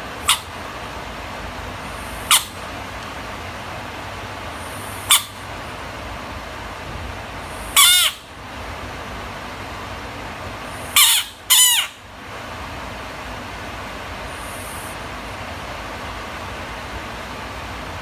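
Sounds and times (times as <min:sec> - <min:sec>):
steady hiss: 0:00.0 - 0:18.0
frog screaming: 0:00.2 - 0:00.5, 0:01.9 - 0:02.6, 0:04.6 - 0:05.4, 0:07.5 - 0:08.3, 0:10.8 - 0:12.0.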